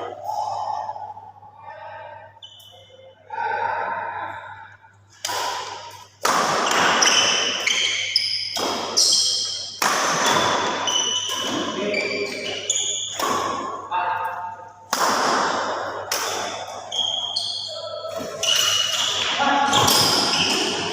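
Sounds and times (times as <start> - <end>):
noise echoing in hall: 0.0 - 20.9
shoes squeaking on floor: 6.6 - 13.2, 16.9 - 20.9.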